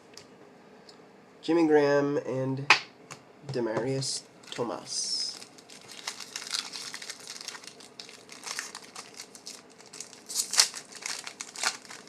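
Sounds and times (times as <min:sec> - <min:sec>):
foil wrapper crinkling and tearing: 0:05.2 - 0:12.0.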